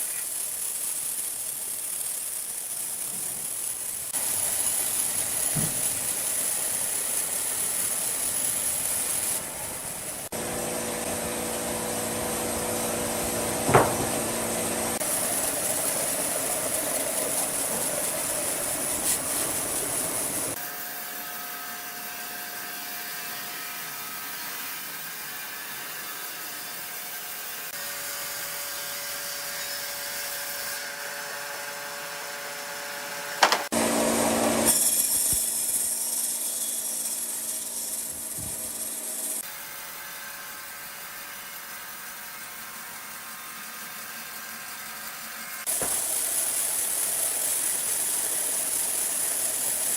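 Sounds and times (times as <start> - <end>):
saw cutting wood: 0.0 - 49.9
sawmill machinery running: 0.0 - 49.9
sharp knock: 13.7 - 14.2.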